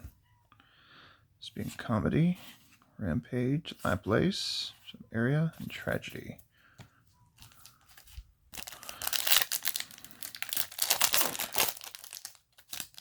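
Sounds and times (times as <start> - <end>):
foil wrapper crinkling and tearing: 8.5 - 13.0.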